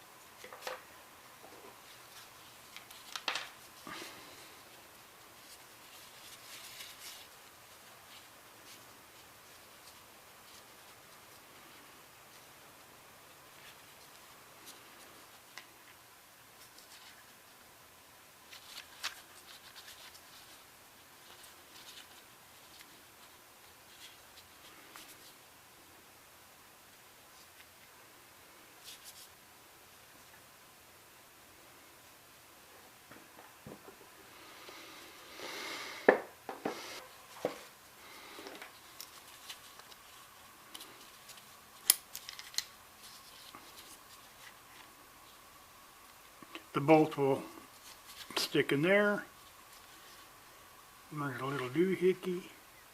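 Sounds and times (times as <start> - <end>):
small clicks of parts handled: 40.7 - 42.7.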